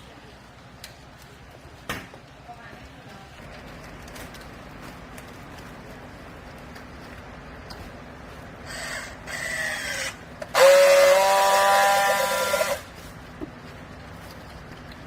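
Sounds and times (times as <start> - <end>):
hydraulic baler whining: 8.6 - 12.9.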